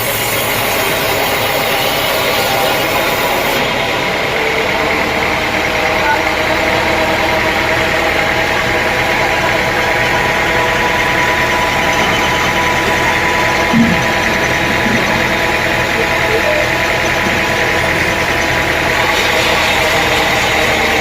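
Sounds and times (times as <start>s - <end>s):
sawmill machinery droning: 0.0s - 21.0s.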